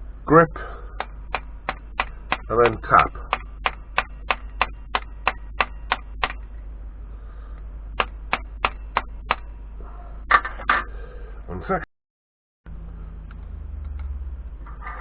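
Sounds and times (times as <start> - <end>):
small hammer tapping metal rod: 1.0 - 6.4.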